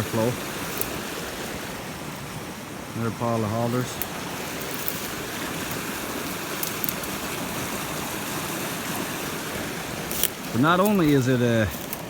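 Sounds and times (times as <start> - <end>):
brook water flowing: 0.0 - 12.0.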